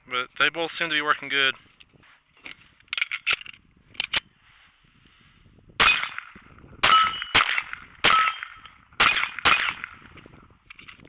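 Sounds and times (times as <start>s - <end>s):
pistol shots with ring: 5.8s - 10.1s.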